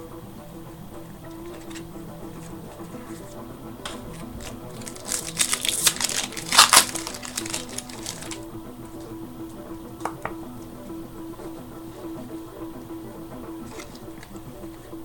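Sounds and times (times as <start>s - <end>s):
background music: 0.0s - 15.0s
cards clicking: 1.3s - 9.1s, 13.6s - 14.8s
foil wrapper tearing and crinkling: 3.9s - 8.4s.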